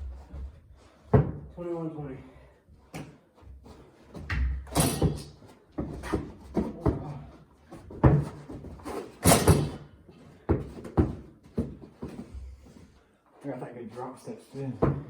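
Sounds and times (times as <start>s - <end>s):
basketball bouncing on hard floor: 1.1s - 1.5s, 4.1s - 9.9s, 10.5s - 12.4s.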